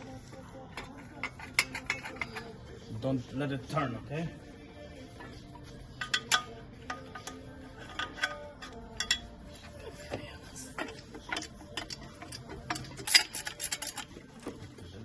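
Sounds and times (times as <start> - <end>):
hand tools clinking on metal: 0.8 - 2.6, 6.0 - 14.7.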